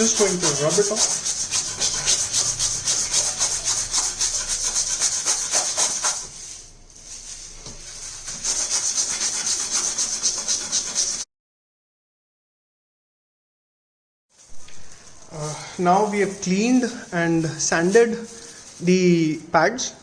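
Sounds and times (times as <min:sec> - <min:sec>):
metal rotor scraping on sandpaper: 0:00.0 - 0:11.3, 0:15.8 - 0:19.4.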